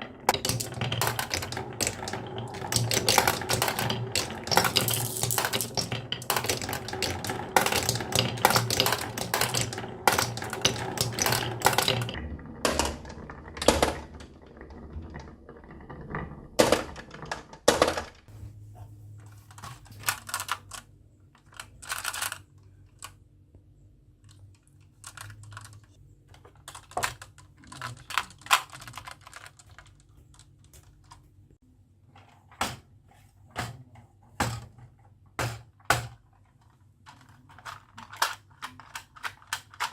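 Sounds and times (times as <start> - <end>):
marbles clattering down wooden run: 0.0 - 18.3.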